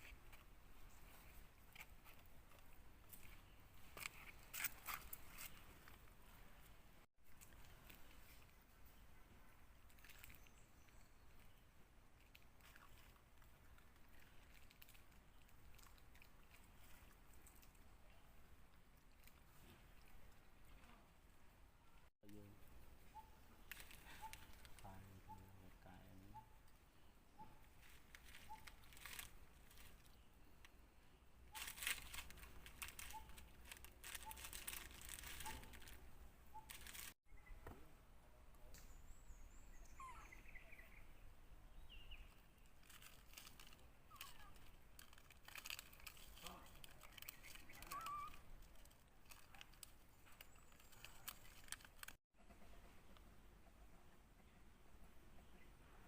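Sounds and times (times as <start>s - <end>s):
rustling and crinkling: 0.0s - 9.0s, 9.8s - 11.6s, 12.2s - 17.9s, 23.6s - 24.9s, 27.7s - 30.8s, 31.5s - 37.2s, 42.6s - 52.2s.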